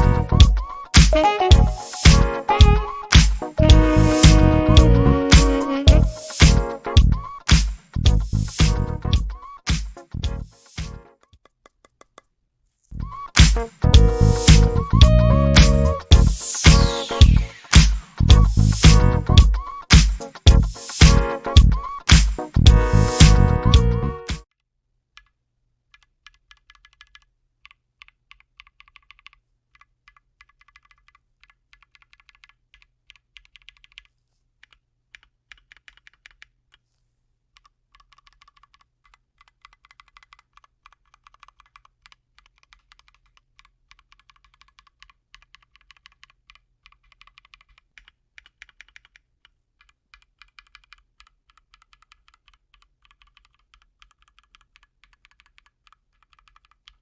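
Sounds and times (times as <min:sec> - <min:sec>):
typing on mechanical keyboard: 0:25.2 - 0:36.8, 0:37.5 - 0:57.0.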